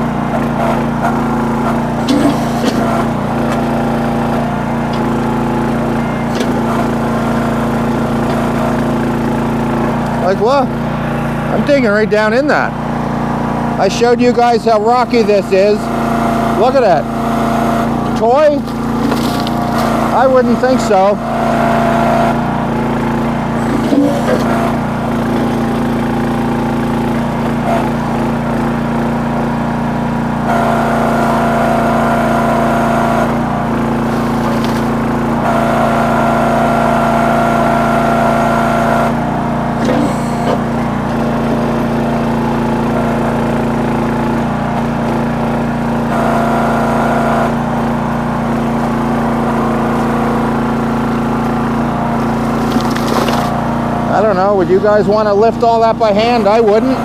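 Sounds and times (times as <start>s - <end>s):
high hydraulic whine: 0.0s - 12.7s, 17.8s - 29.2s, 30.5s - 45.6s
backhoe engine running: 0.0s - 57.0s.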